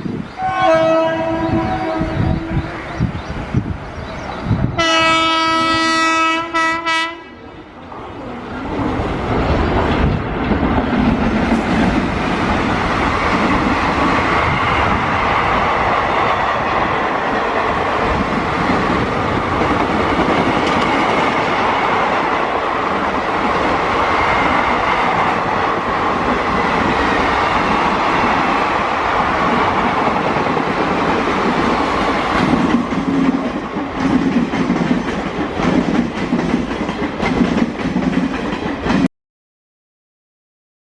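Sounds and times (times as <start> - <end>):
train rumbling past: 0.0 - 39.1
train wheels clacking over rail joints: 8.7 - 14.5, 16.6 - 22.1, 29.5 - 39.1.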